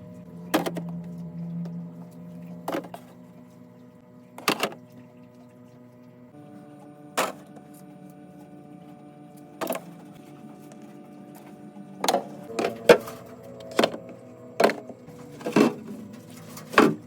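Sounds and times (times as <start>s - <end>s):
steady hum of held tones: 0.0s - 17.0s.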